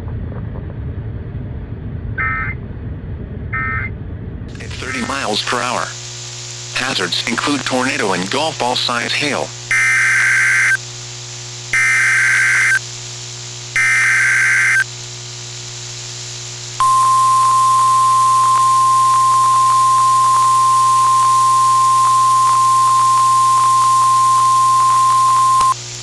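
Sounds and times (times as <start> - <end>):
digital data bursts: 4.5 - 10.8, 11.7 - 12.9, 13.7 - 14.9, 16.8 - 25.8
faint radio hiss: 4.5 - 26.0
steady warning alarm tone: 6.8 - 10.8, 11.7 - 12.8, 13.8 - 14.9, 16.8 - 25.8.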